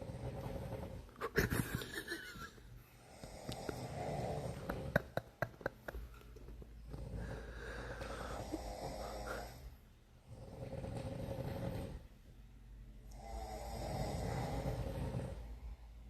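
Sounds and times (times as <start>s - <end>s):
person snoring: 0.0s - 1.1s, 3.0s - 5.3s, 6.8s - 12.1s, 13.1s - 15.9s.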